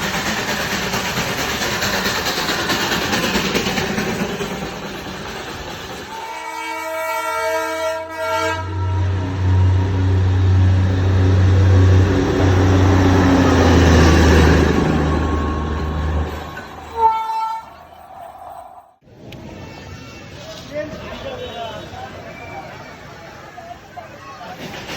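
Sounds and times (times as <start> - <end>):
train rumbling and rushing: 0.0 - 24.9
train tooting: 0.0 - 24.9.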